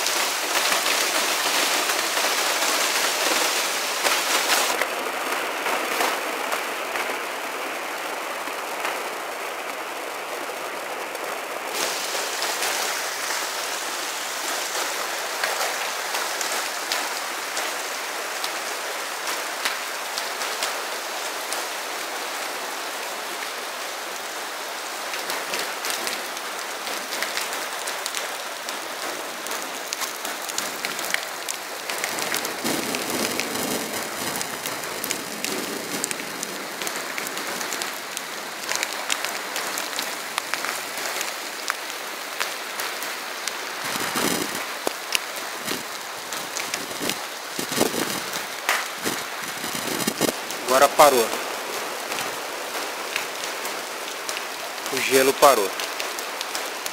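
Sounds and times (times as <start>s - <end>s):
hail and rain clattering: 0.0s - 56.9s
sharp ticks of hailstones: 27.1s - 56.9s.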